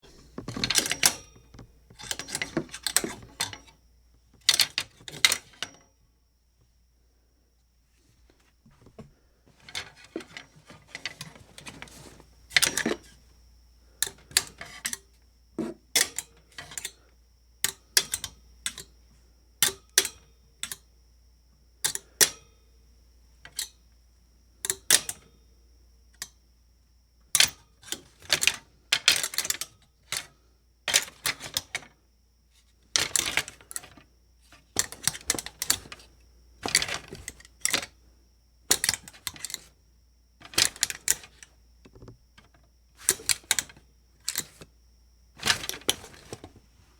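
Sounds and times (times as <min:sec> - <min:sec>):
hanger rattling against metal: 0:00.3 - 0:03.7, 0:34.8 - 0:37.9.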